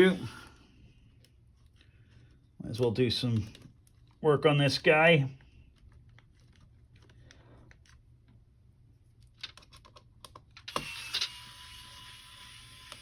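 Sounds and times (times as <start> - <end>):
small parts clicking and tapping: 9.2 - 13.0.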